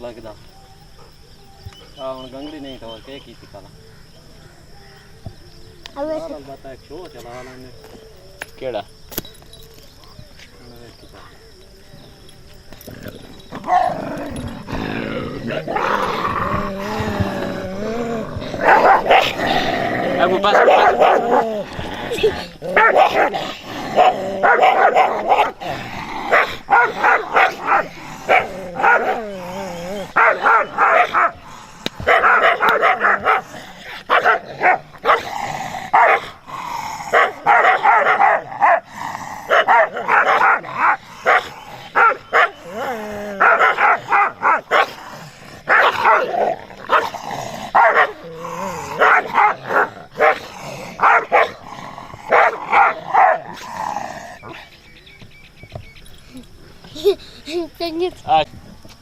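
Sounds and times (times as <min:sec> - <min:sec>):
dog barking: 0:18.6 - 0:19.4, 0:20.2 - 0:21.4, 0:22.7 - 0:25.6, 0:26.3 - 0:29.2, 0:30.0 - 0:31.4, 0:32.0 - 0:33.5, 0:34.1 - 0:35.3, 0:35.9 - 0:36.4, 0:37.1 - 0:38.9, 0:39.5 - 0:42.6, 0:43.4 - 0:45.0, 0:45.7 - 0:47.1, 0:47.7 - 0:48.2, 0:48.9 - 0:51.6, 0:52.3 - 0:53.6.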